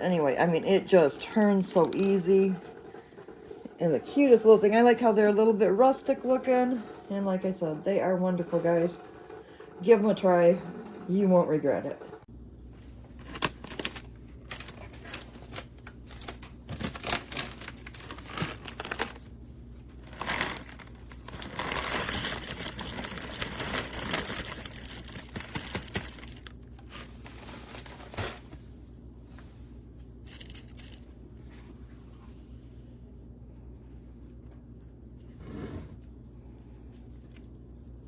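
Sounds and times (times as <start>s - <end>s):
coffee grinder crunching beans: 19.9s - 26.6s, 30.3s - 31.1s.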